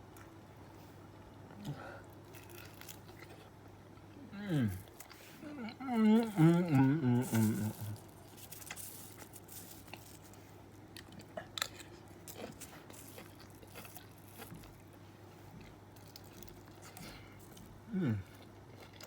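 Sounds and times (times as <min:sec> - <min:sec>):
person chewing food: 0:01.5 - 0:04.1, 0:04.8 - 0:19.0.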